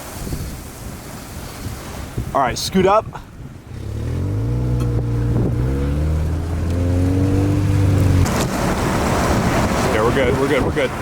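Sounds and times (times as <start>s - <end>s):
car engine accelerating: 3.7s - 10.3s.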